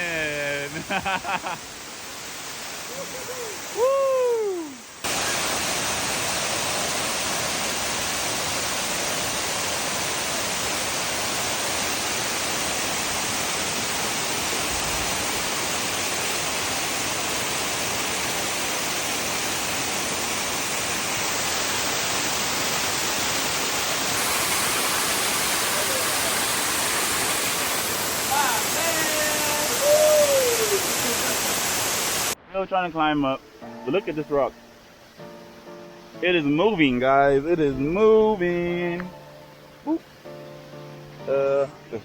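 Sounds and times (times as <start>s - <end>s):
waterfall pouring: 4.7s - 32.4s.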